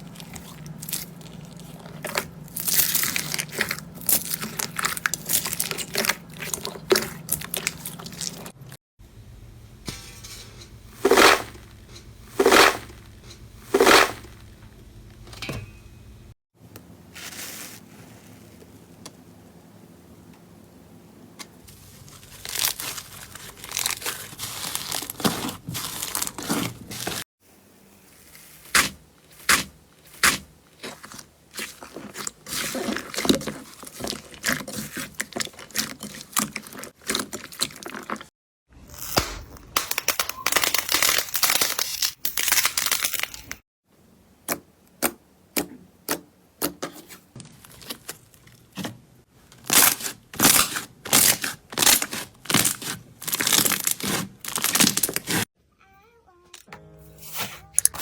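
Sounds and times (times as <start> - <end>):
slime crackling and crunching: 0.0 - 8.6, 21.7 - 27.3, 28.1 - 38.3, 38.9 - 43.6, 47.5 - 48.8, 49.6 - 55.5.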